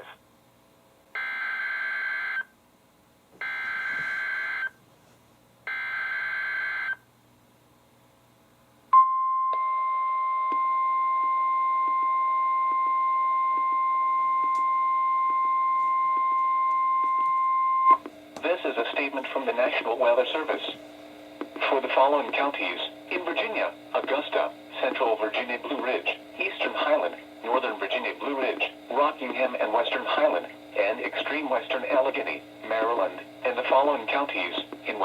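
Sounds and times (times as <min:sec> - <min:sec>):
steady warning alarm tone: 0:01.2 - 0:02.4, 0:03.4 - 0:04.8, 0:05.7 - 0:07.0, 0:09.5 - 0:35.0.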